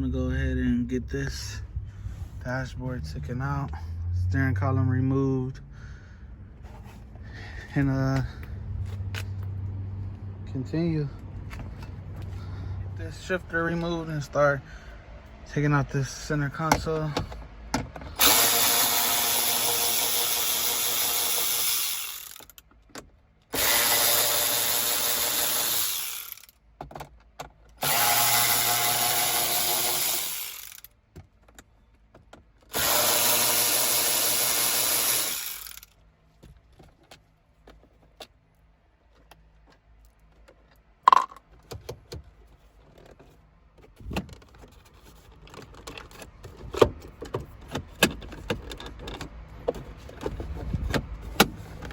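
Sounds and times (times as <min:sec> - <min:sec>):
parts and tools clicking and knocking: 0:16.6 - 0:51.9
power drill-driver running: 0:18.2 - 0:22.5, 0:23.5 - 0:26.5, 0:27.8 - 0:30.9, 0:32.7 - 0:35.9.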